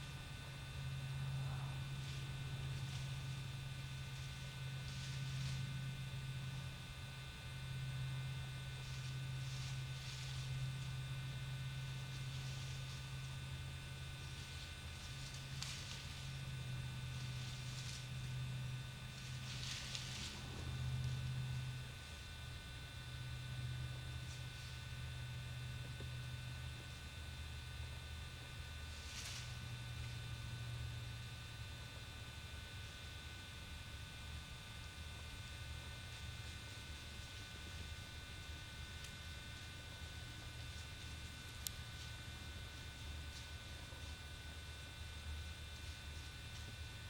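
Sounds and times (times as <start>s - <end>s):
electrical hum with whine: 0.0s - 47.0s
soft rustle: 4.0s - 6.1s, 8.8s - 21.6s, 28.8s - 30.2s.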